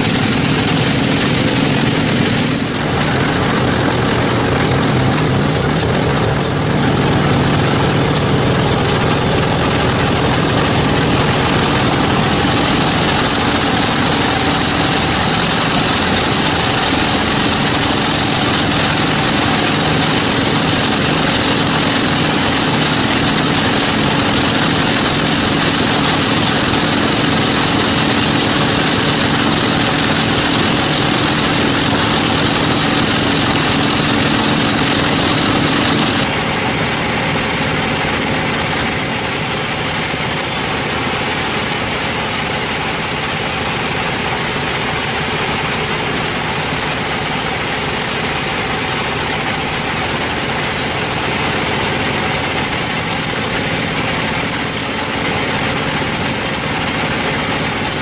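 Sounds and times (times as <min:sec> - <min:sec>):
sawmill machinery engine drone: 0:00.0 - 0:58.0.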